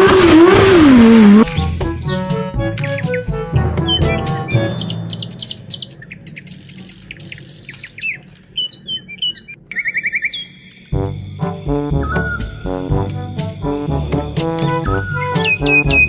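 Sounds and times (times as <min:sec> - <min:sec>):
background music: 0:00.0 - 0:06.7, 0:11.0 - 0:16.0
birds chirping: 0:00.8 - 0:16.0.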